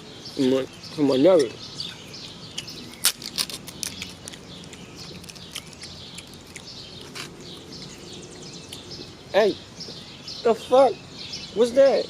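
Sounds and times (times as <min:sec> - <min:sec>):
faint birds chirping: 0:00.0 - 0:12.0
packaging crinkling and clicking: 0:02.9 - 0:06.6.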